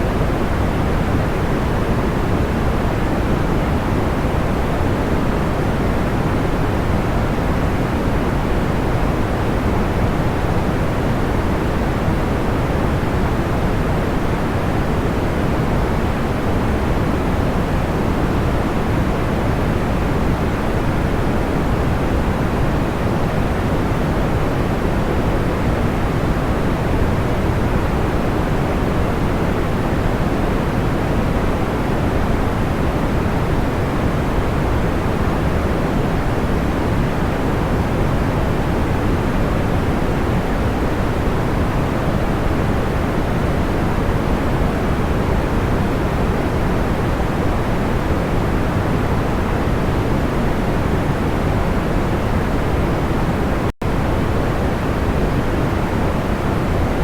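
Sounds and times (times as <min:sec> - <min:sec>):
low white noise rush: 0:00.0 - 0:57.0.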